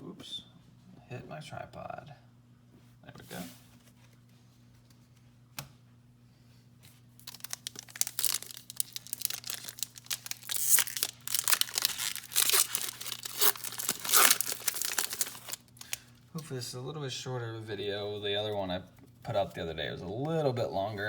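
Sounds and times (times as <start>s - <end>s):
foil wrapper tearing and crinkling: 7.2s - 16.1s.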